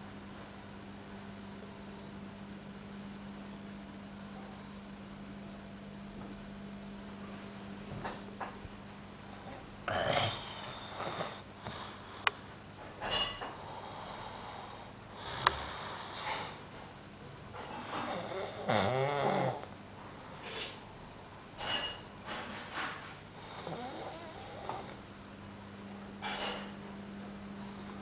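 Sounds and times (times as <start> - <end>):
person snoring: 9.9 - 12.3, 13.6 - 16.5, 18.0 - 19.7, 23.4 - 25.0.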